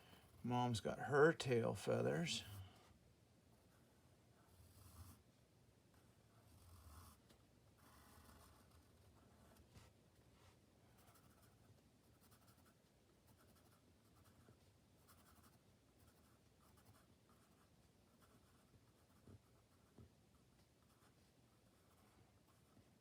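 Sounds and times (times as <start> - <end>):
pen scratching on paper: 4.4 - 5.2, 6.0 - 7.2, 7.8 - 9.9, 11.0 - 20.1, 20.8 - 22.8.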